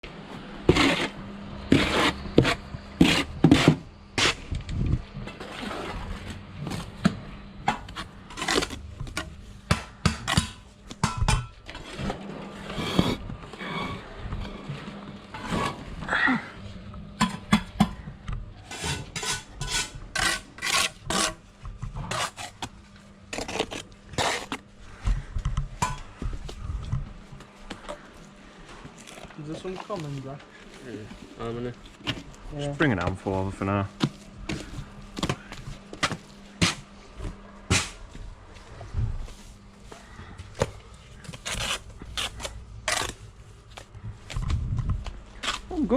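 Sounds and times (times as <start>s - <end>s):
steady hum: 0.0s - 45.9s
trowel scraping and clinking: 18.7s - 21.4s.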